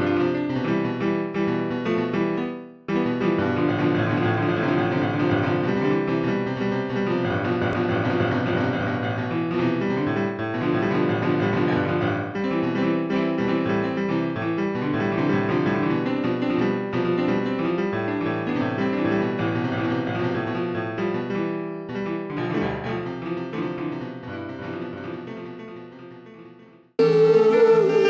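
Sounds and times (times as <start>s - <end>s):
slow piano music: 0.0s - 28.0s.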